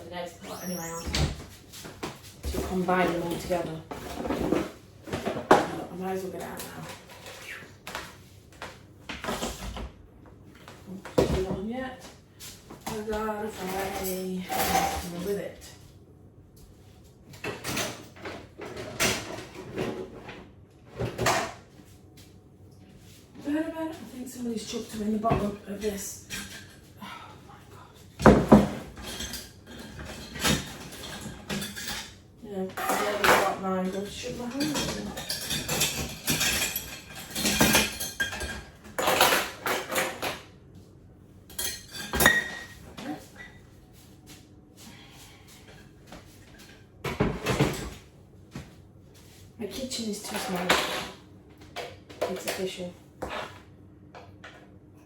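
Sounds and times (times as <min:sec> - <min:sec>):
cupboards knocking and clattering: 0:28.2 - 0:29.1
metal utensils clattering: 0:32.7 - 0:40.4.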